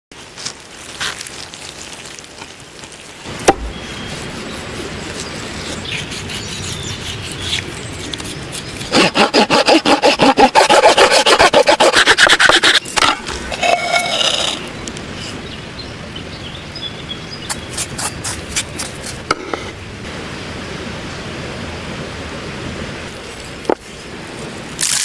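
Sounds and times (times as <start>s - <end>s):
rustling and scraping: 0.4s - 9.5s, 10.6s - 15.4s, 17.4s - 19.8s
hand saw cutting wood: 3.3s - 14.7s, 17.5s - 19.8s
wood snapping: 3.4s - 3.8s.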